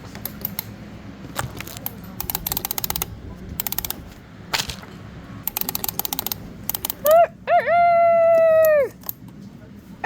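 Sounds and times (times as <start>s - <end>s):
clockwork key ratcheting clicks: 1.7s - 4.0s, 5.4s - 7.1s.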